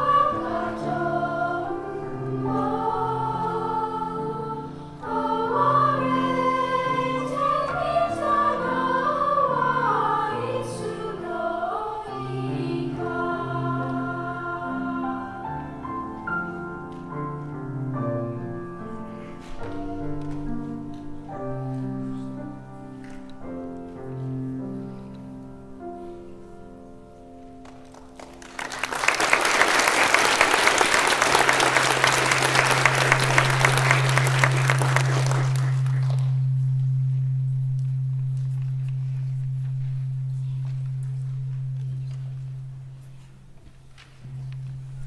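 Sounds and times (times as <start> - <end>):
audience applause: 28.0 - 36.4
steady low hum: 32.1 - 45.0.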